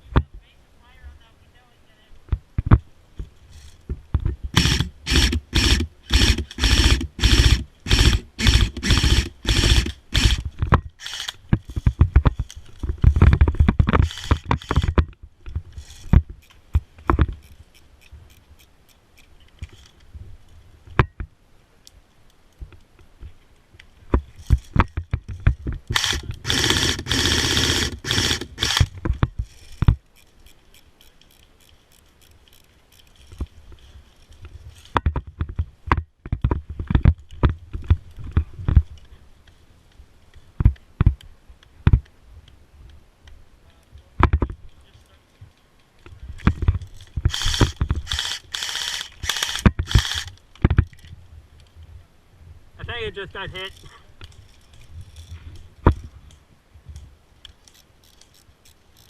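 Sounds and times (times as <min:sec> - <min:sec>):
scraping against microphone: 0:10.5 - 0:16.5.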